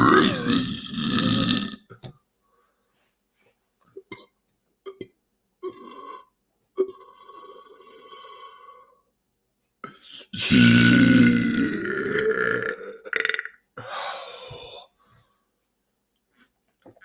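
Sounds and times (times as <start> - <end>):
long burp: 0.0 - 2.0, 4.1 - 8.1, 10.4 - 13.6.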